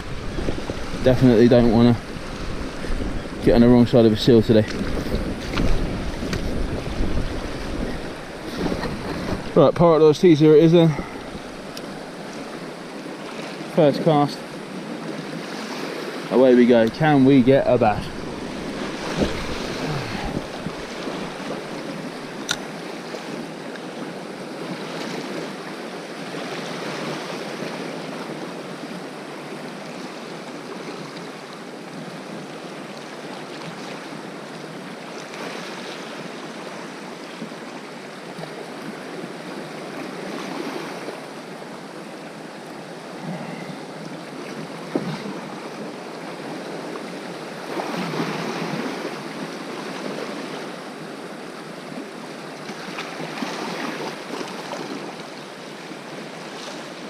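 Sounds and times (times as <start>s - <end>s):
sea waves washing on rocks: 0.0s - 25.8s.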